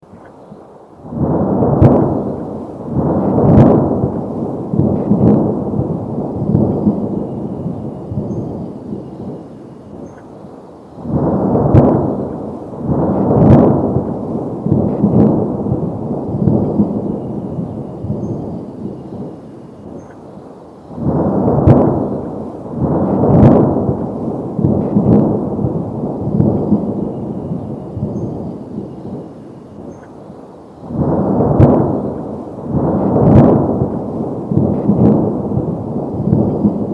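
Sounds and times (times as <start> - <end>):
thunder cracks and rolling rumble: 1.0 - 36.9.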